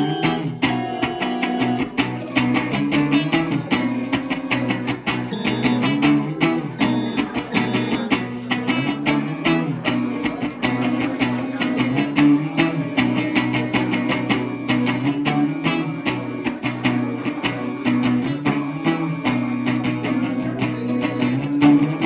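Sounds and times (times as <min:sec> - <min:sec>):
live band playing instrumental: 0:00.0 - 0:16.5.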